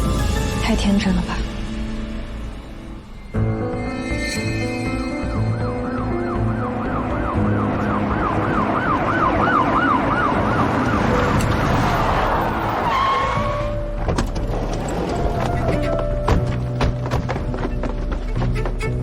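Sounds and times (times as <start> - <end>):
dramatic background music: 0.0 - 19.0
police siren wailing: 5.8 - 13.5.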